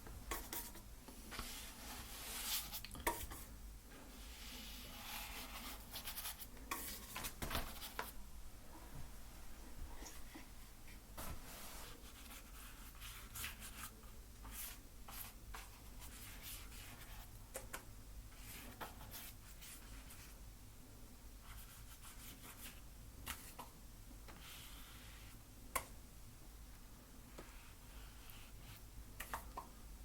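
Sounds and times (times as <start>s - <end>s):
faint scratchy paint strokes: 0.3s - 8.2s, 9.9s - 17.4s, 24.4s - 25.4s, 27.3s - 29.4s.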